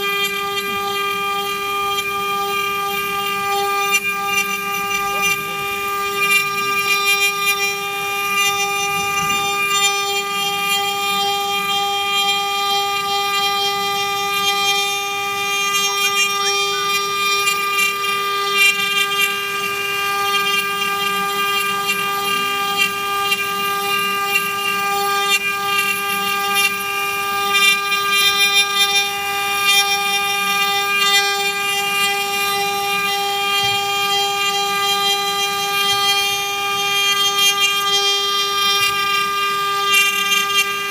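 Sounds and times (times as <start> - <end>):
router spindle whine: 0.0 - 40.9.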